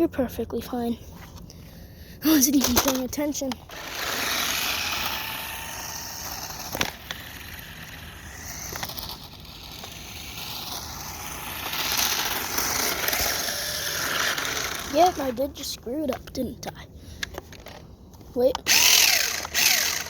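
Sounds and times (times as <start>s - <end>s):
toy car electric motor whining: 2.3s - 15.7s, 18.4s - 20.0s
tyres rolling over ground: 2.4s - 15.9s.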